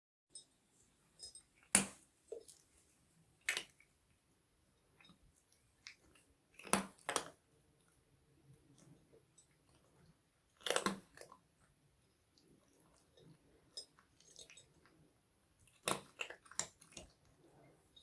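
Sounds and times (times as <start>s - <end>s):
kittens crunching dry food: 5.0s - 7.4s, 9.6s - 11.4s, 12.4s - 15.0s, 15.6s - 17.7s.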